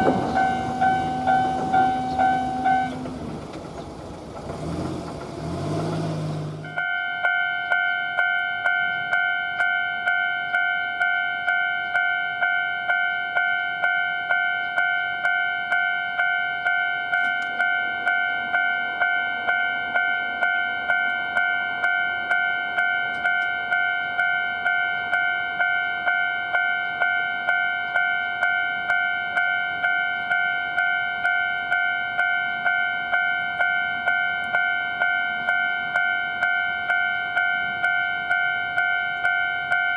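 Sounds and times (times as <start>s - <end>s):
level crossing bell clanging: 0.0s - 3.5s, 6.6s - 39.9s
train noise: 0.0s - 6.9s.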